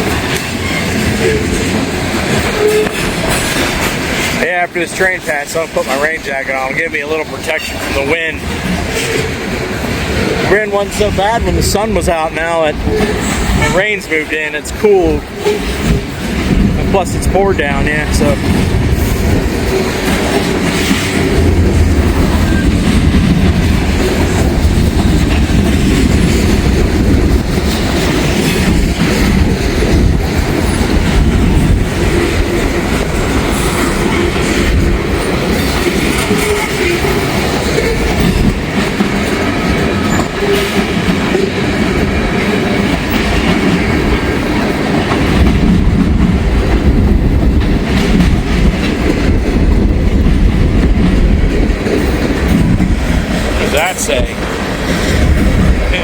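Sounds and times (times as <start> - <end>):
freight train rolling past: 0.0 - 56.0
wind buffeting microphone: 15.0 - 56.0.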